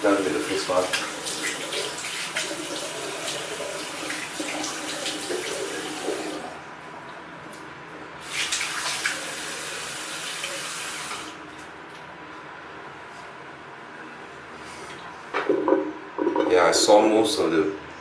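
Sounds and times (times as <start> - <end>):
tap water running into sink: 0.0 - 6.6, 8.3 - 11.4.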